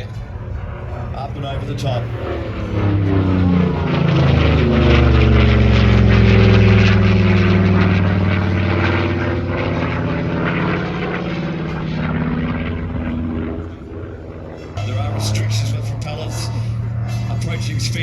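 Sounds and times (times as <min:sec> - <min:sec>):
propeller plane passing: 0:00.0 - 0:18.0.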